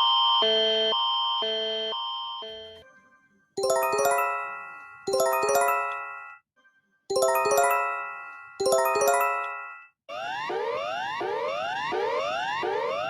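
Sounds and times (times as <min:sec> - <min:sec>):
electronic bell-like alert chime: 0:03.6 - 0:06.4, 0:07.1 - 0:09.9.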